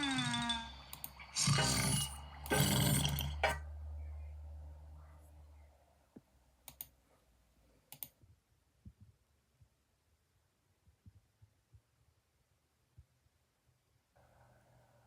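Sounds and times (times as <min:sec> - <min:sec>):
low hum: 0:00.0 - 0:05.9
person snoring: 0:01.3 - 0:03.4
sharp clicks: 0:06.6 - 0:06.9, 0:07.9 - 0:08.2.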